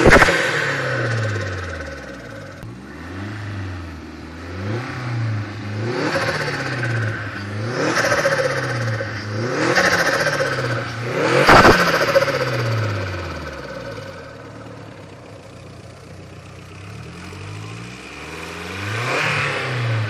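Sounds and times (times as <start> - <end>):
sharp exhaust crack: 0.0 - 2.6, 6.1 - 14.3
car engine revving in blips: 0.0 - 14.7, 17.0 - 20.0.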